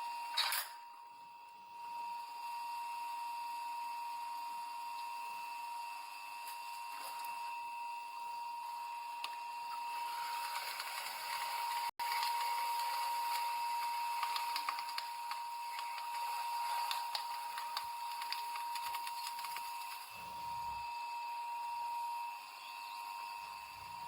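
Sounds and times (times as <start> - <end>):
crushing machine humming: 9.7 - 20.8.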